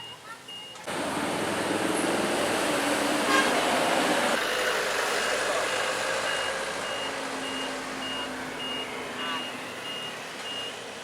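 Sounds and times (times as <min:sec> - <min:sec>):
heavy vehicle engines running: 0:00.0 - 0:11.0
horn toot: 0:03.2 - 0:03.7
reversing alarm beeping: 0:05.6 - 0:10.8.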